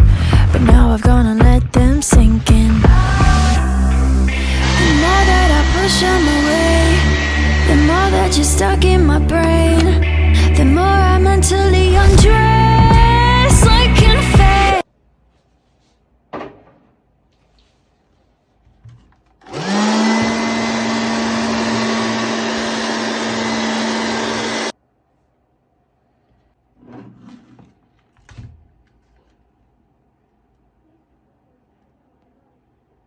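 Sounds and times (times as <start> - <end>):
vacuum cleaner motor whine: 4.3 - 9.0, 19.4 - 24.7.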